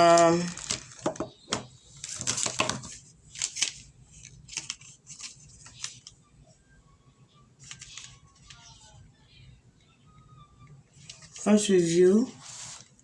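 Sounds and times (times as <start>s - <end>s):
packaging crackling rustles: 0.0s - 1.3s.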